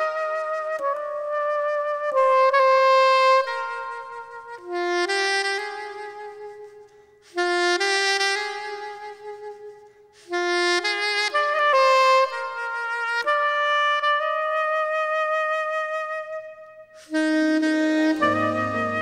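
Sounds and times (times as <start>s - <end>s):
saxophone-like lead melody: 0.0s - 19.0s
low musical accompaniment: 18.1s - 19.0s.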